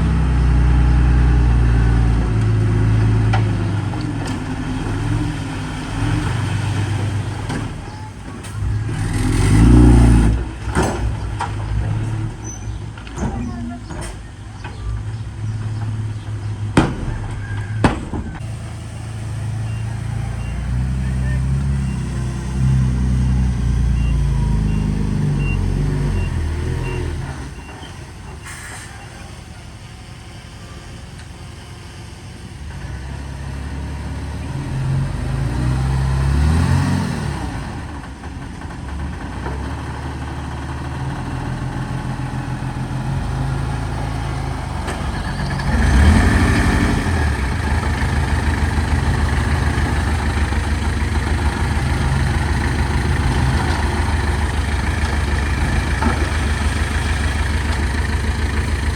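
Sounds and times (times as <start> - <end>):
heavy diesel engines working: 0.0 - 58.9
reversing alarm beeping: 18.8 - 22.6, 23.6 - 29.6.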